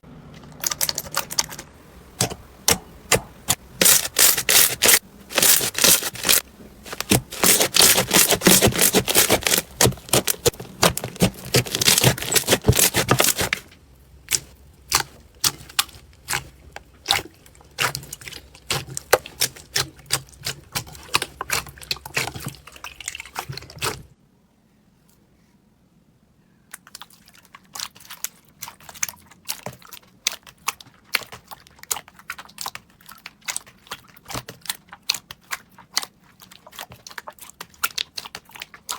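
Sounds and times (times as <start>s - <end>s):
slime crackling and popping: 2.2s - 13.7s.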